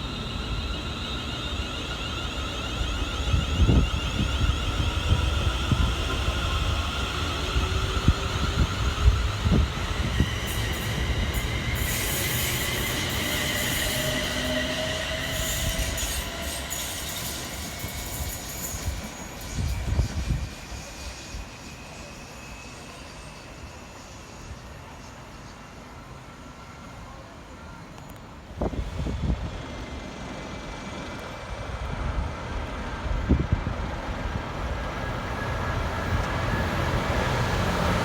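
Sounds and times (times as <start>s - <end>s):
wheels squealing: 0.0s - 25.4s
train rumbling: 0.0s - 27.1s, 27.8s - 38.0s.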